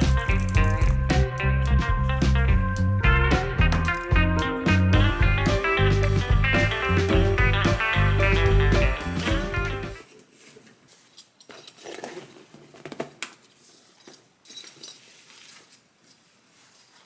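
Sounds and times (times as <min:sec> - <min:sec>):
background music: 0:00.0 - 0:10.0
soft rustling: 0:10.0 - 0:17.0.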